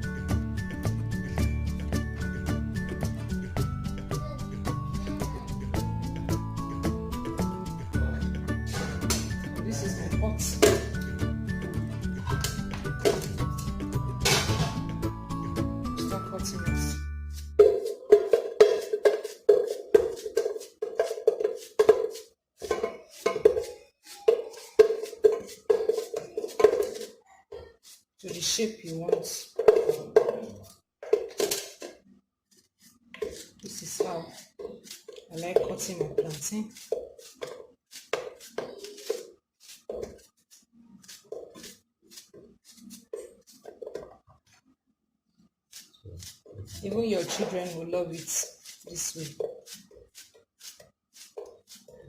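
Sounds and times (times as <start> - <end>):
knife cutting plantain: 32.8 - 43.9.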